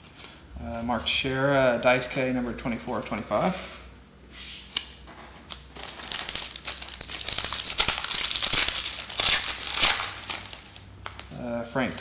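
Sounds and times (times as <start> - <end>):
card pack wrapper crinkling: 5.5 - 11.4.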